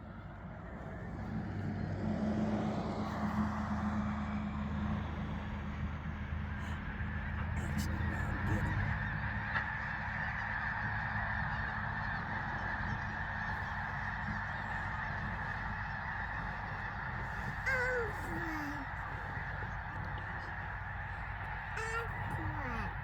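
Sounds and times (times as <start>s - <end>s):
flock of geese honking: 0.0s - 23.0s
near goose honking loudly: 6.6s - 23.0s.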